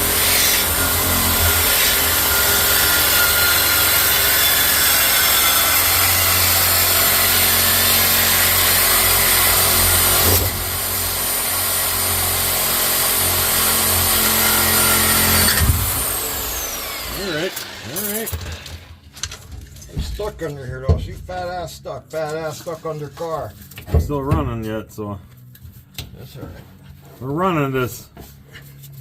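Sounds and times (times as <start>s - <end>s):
power saw cutting metal pipe: 0.0s - 19.0s.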